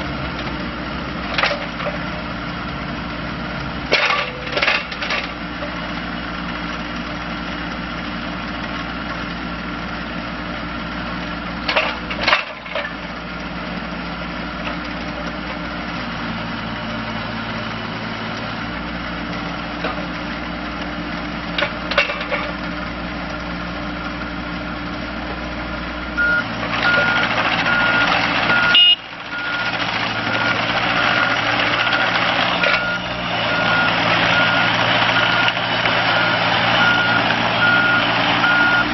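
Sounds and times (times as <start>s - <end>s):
diesel excavator engine running: 0.0s - 38.9s
travel alarm beeping: 26.2s - 29.7s, 32.6s - 35.5s, 36.1s - 38.9s.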